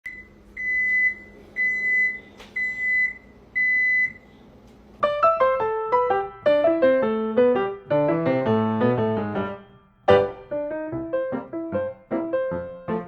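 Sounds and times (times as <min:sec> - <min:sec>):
piano music: 0:05.0 - 0:13.0.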